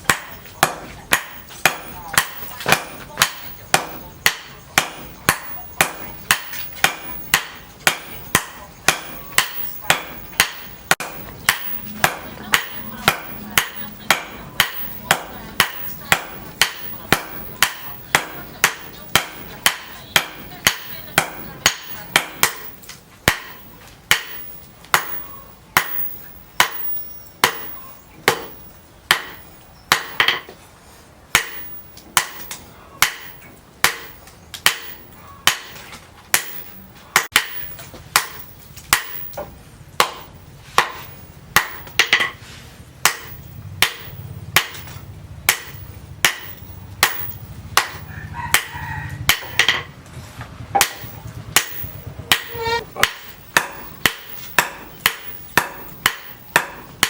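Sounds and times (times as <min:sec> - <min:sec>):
hammer ringing on anvil: 0:00.1 - 0:30.5, 0:50.8 - 0:57.0.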